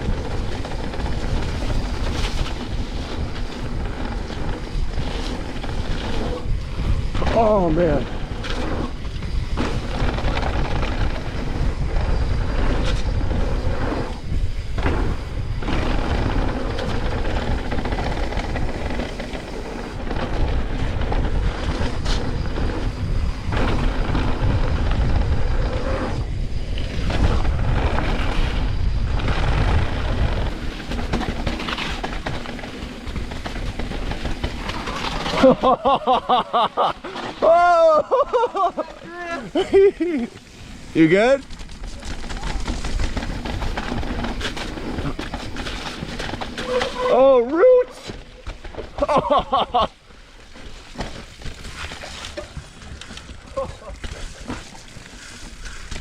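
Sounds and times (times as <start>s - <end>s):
wind rushing: 0.0s - 35.6s
bike clattering over bumps: 0.0s - 56.0s
bike tyre noise: 0.0s - 56.0s.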